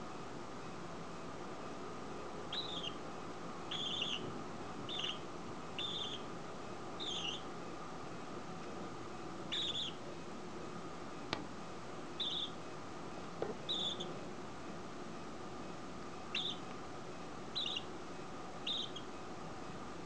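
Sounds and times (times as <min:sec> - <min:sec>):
steady background hiss: 0:00.0 - 0:20.0
budgerigar chirping: 0:02.5 - 0:03.0, 0:03.7 - 0:04.2, 0:04.9 - 0:05.2, 0:05.8 - 0:06.3, 0:07.0 - 0:07.4, 0:09.5 - 0:10.0, 0:12.2 - 0:12.6, 0:13.6 - 0:14.1, 0:16.3 - 0:16.6, 0:17.5 - 0:17.9, 0:18.6 - 0:19.1.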